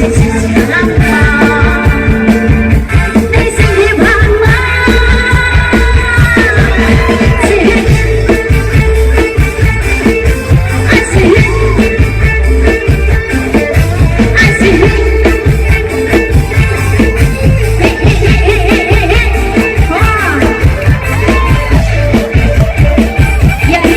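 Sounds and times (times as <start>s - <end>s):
person singing: 0.0s - 8.5s
drum and bass beat: 0.0s - 23.9s
guitar: 0.0s - 23.9s
live band music: 0.0s - 23.9s.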